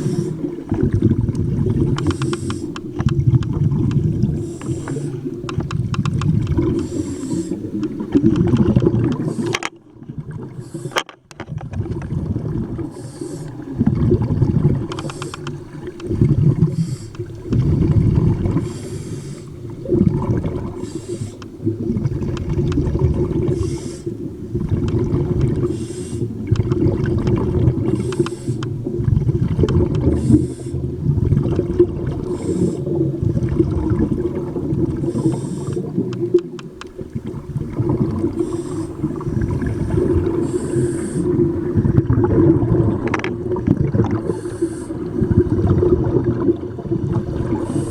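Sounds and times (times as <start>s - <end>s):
low rumble of water: 0.0s - 47.9s
underwater breathing and bubbles: 0.0s - 47.9s.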